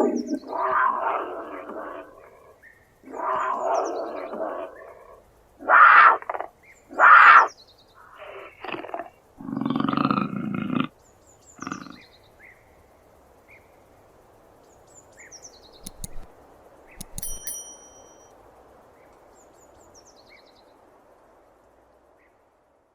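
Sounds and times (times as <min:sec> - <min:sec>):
clicks: 0:15.8 - 0:18.3.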